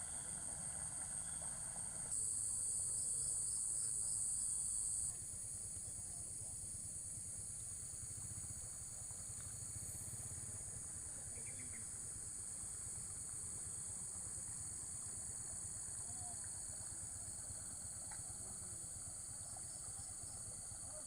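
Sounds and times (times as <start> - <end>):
low steady rumble: 0.0 - 3.4
insect chorus with pulsing chirp: 0.0 - 21.0.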